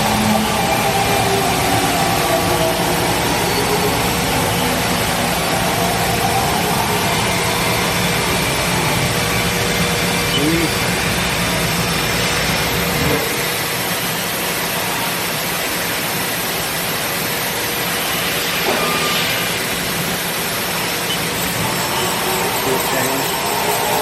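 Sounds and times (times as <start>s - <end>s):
machine whirring and hissing: 0.0s - 24.0s.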